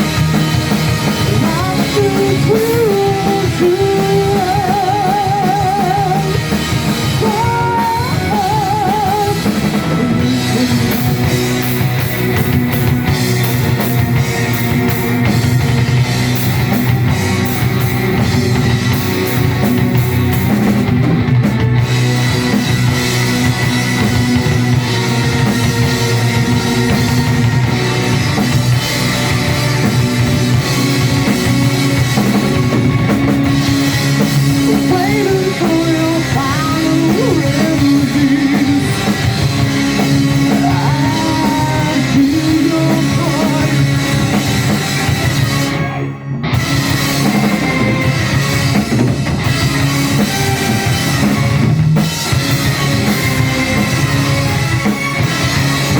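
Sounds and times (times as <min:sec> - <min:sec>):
drum kit: 0:00.0 - 0:55.9
electric guitars: 0:00.0 - 0:55.9.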